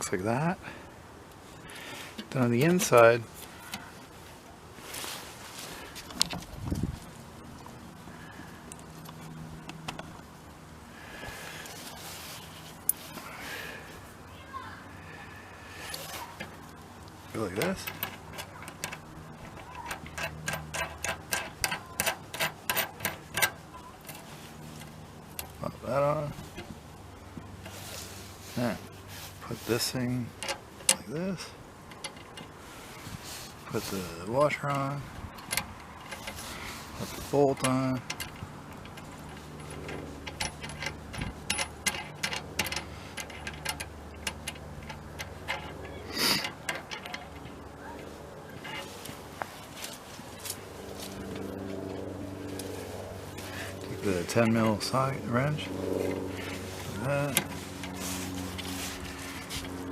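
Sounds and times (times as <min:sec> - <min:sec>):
steady low hum: 0:00.0 - 0:59.9
small metal parts clinking: 0:17.3 - 0:26.7, 0:35.4 - 0:47.6
small metal clicks and taps: 0:17.8 - 0:25.6
metal parts clatter: 0:35.4 - 0:47.5.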